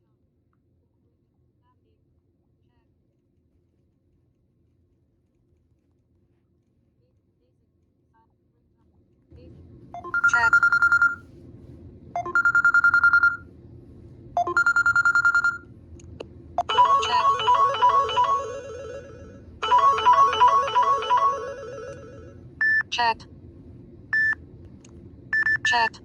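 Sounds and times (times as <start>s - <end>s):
phone trilling ring: 10.0s - 11.2s, 12.2s - 13.4s, 14.4s - 15.6s, 16.6s - 22.4s
short electronic melody: 16.6s - 22.3s.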